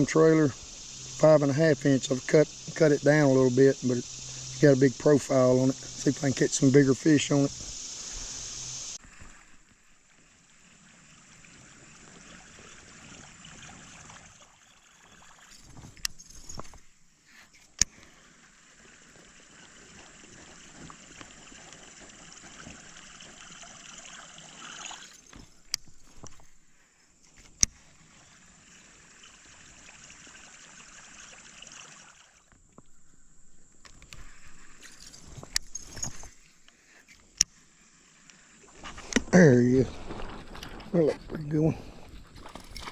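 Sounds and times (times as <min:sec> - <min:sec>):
high even hiss: 0:00.0 - 0:10.5.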